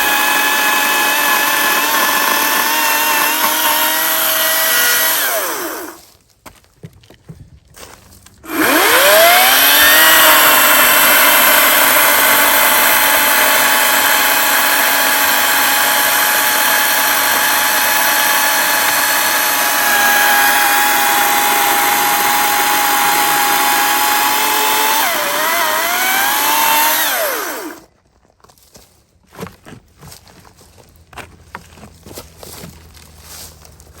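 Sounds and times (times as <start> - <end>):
chainsaw motor whine cutting log: 0.0 - 6.0, 8.4 - 27.9.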